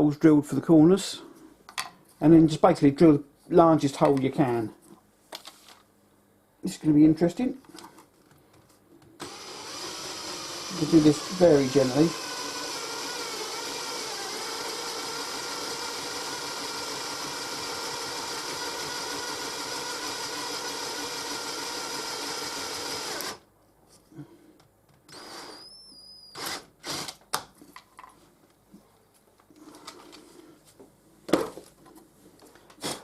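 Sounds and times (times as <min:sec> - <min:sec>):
electric drill boring: 0:09.2 - 0:23.4, 0:25.1 - 0:27.2.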